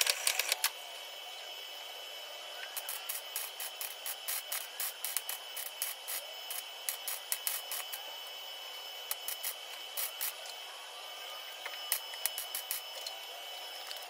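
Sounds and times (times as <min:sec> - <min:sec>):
welder crackling: 0:00.0 - 0:14.0
steady high tone: 0:00.7 - 0:14.0.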